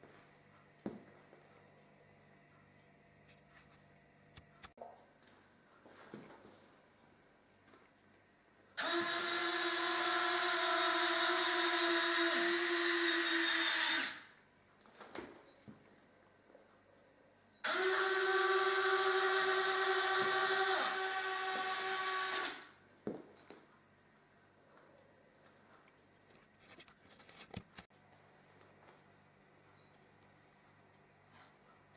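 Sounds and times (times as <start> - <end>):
small electric motor running: 8.8 - 14.3, 17.6 - 22.8.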